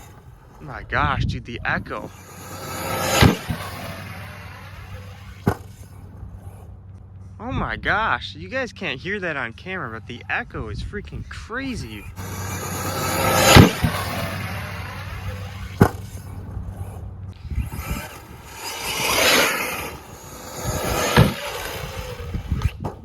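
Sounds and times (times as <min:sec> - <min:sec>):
electric toy truck motor whining: 0:00.0 - 0:00.9, 0:01.8 - 0:07.2, 0:11.2 - 0:23.0
toy truck landing impacts: 0:02.0 - 0:06.7, 0:12.1 - 0:23.0.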